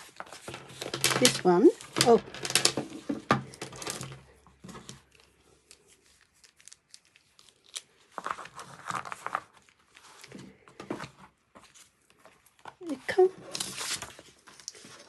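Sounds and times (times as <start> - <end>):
packaging crinkling and rustling: 0.0 - 15.0.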